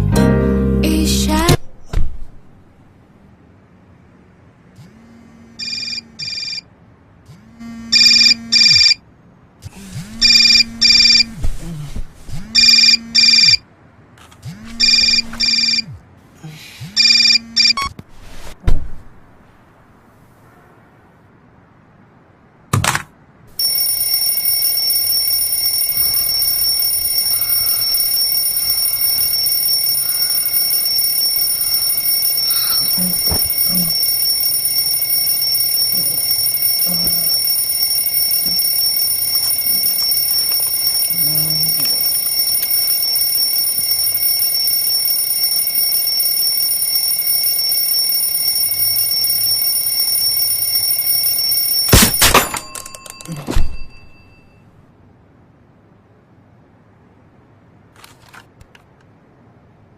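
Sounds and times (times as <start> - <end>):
alarm clock ringing: 8.0 - 9.0, 10.2 - 11.2, 12.6 - 13.6, 14.8 - 15.8, 23.6 - 54.5.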